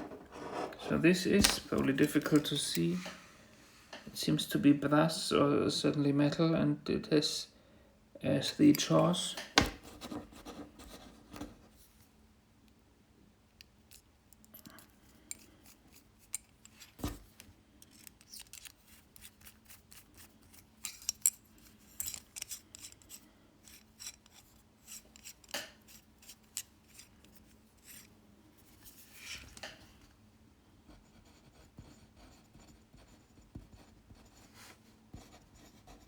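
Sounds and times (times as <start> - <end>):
mechanical pencil clicks and scrapes: 17.8 - 28.1.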